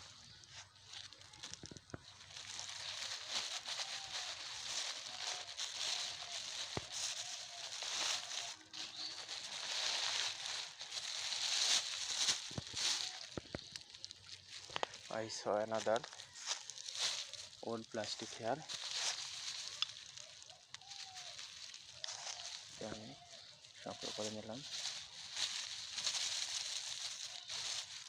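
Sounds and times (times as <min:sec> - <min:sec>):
plastic and cloth rustling: 0:00.0 - 0:28.0.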